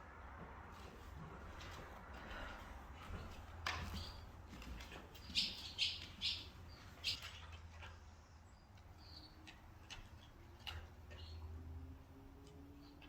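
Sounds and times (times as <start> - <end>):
birds chirping: 2.2 - 12.0.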